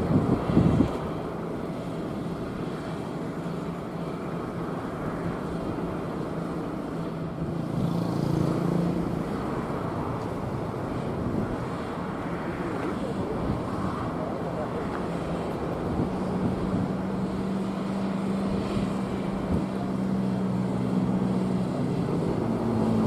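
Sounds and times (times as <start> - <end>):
engine humming: 0.0 - 23.0.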